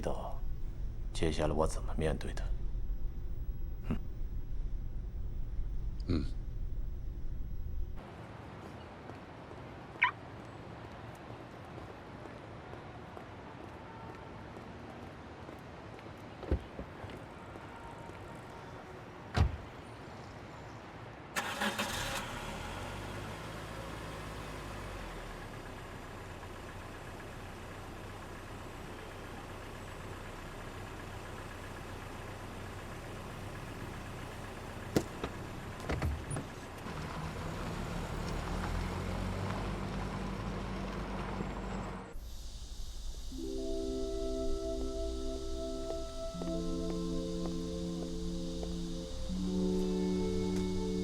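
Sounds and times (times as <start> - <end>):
car engine running: 0.0 - 8.0, 25.0 - 43.4, 45.6 - 51.0.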